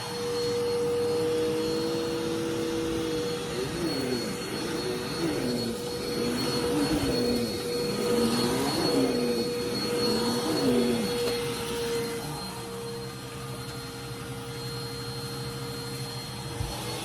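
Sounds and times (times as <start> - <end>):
wavering tone: 0.0 - 16.6
vacuum cleaner motor whine: 0.0 - 17.0.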